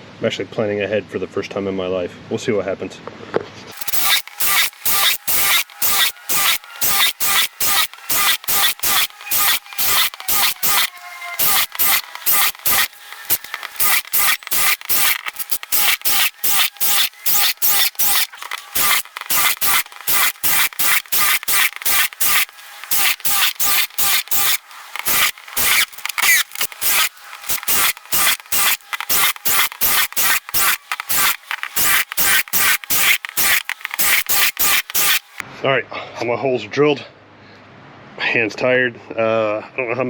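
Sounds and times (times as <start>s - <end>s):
drill scraping through sheet steel: 3.7s - 35.4s.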